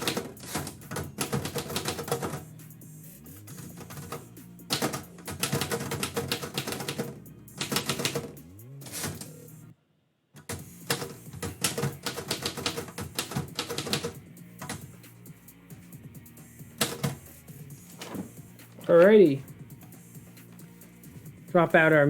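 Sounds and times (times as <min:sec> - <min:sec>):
typewriter keys clacking: 0:00.0 - 0:02.4, 0:03.5 - 0:09.4, 0:10.4 - 0:14.9, 0:16.8 - 0:17.3, 0:17.9 - 0:19.4
background music: 0:00.0 - 0:09.8, 0:10.4 - 0:22.0.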